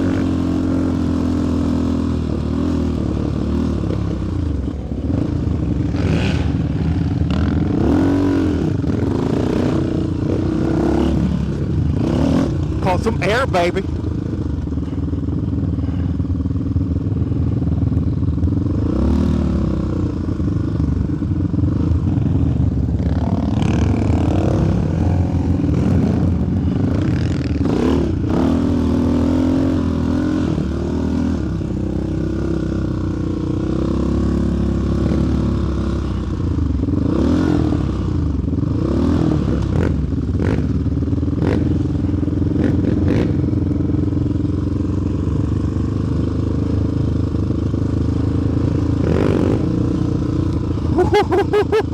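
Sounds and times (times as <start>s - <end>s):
quad engine revving: 5.1s - 13.8s, 37.0s - 38.0s, 48.0s - 51.9s.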